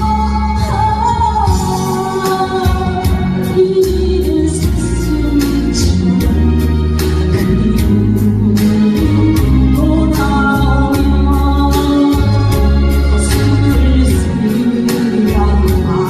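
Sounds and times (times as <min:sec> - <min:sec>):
ballad singing: 0:00.0 - 0:16.0
bass: 0:00.0 - 0:16.0.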